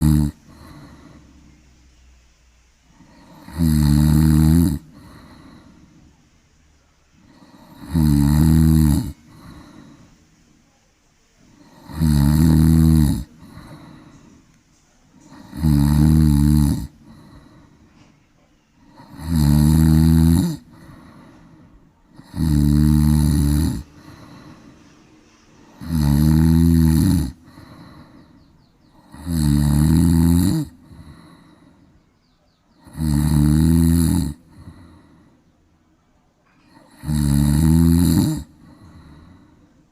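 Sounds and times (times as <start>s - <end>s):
cat snoring: 0.0s - 1.6s, 2.9s - 5.9s, 7.3s - 10.1s, 11.5s - 14.3s, 15.2s - 17.7s, 18.8s - 21.5s, 22.1s - 24.8s, 25.6s - 28.3s, 28.9s - 31.7s, 32.8s - 35.1s, 36.7s - 39.5s.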